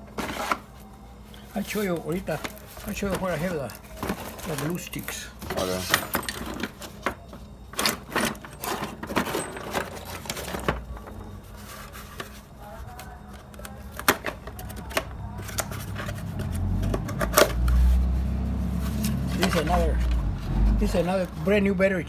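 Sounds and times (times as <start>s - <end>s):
tools clattering while rummaging: 1.6s - 12.4s, 18.8s - 20.2s.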